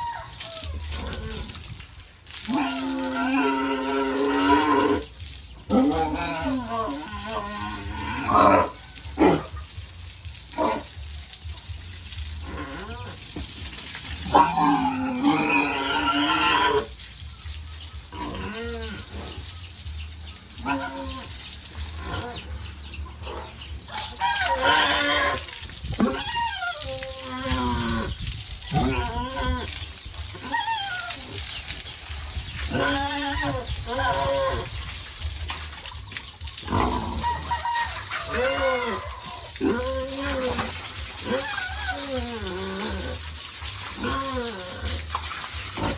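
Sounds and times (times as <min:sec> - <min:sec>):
farm animals calling: 0:12.3 - 0:45.9.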